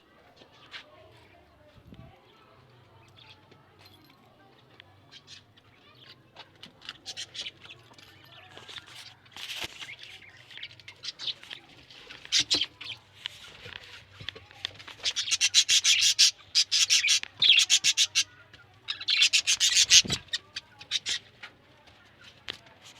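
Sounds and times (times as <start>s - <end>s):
budgerigars chirping: 15.0s - 18.3s.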